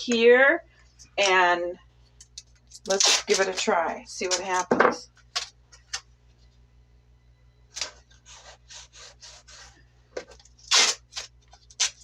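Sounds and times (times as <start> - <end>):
tape ripping: 2.8 - 3.6, 10.4 - 12.0.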